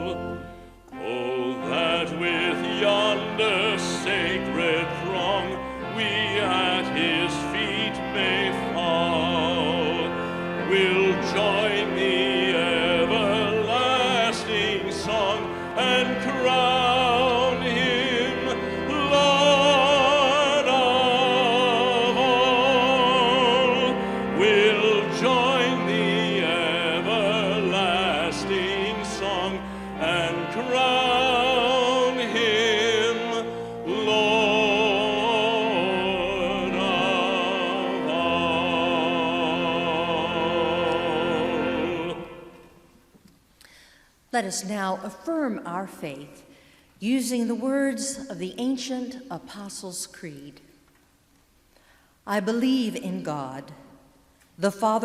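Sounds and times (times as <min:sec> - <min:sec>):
classical singing with vibrato: 0:00.0 - 0:43.2, 0:44.3 - 0:50.6, 0:52.2 - 0:55.0
sustained instrumental accompaniment: 0:00.0 - 0:43.2.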